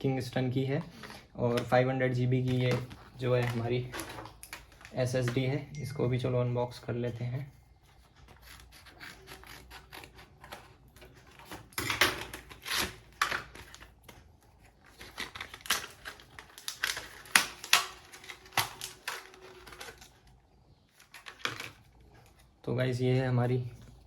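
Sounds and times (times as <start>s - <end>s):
packaging snapping: 8.4s - 22.6s.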